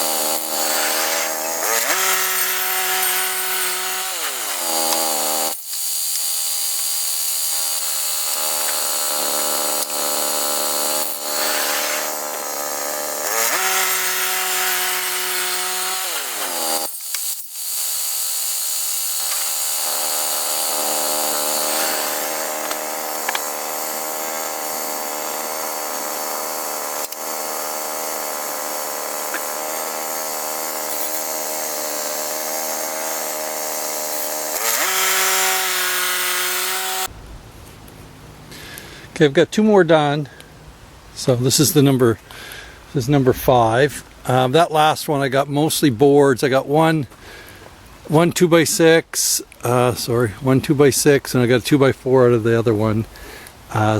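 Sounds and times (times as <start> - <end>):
band blade sawing through log: 0.0 - 37.1
sawmill engine under load: 0.0 - 37.1.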